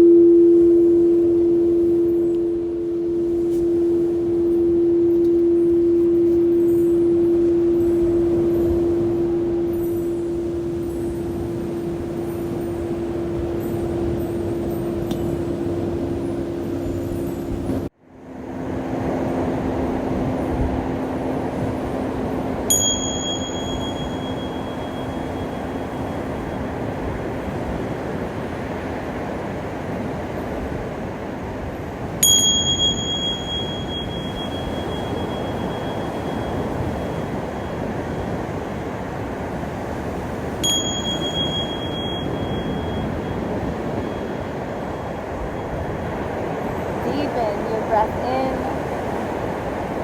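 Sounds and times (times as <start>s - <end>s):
small high-pitched bell ringing: 0.0s - 17.9s, 22.7s - 28.0s, 31.8s - 39.7s, 40.5s - 48.6s
low ringing tone: 0.0s - 50.0s
ocean surf: 0.0s - 50.0s.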